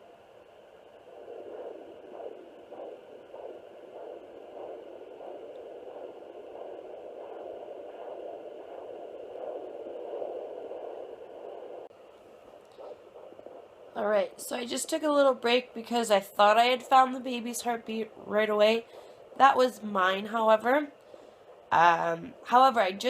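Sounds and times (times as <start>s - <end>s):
doppler heartbeat pulsing: 0.0s - 23.0s.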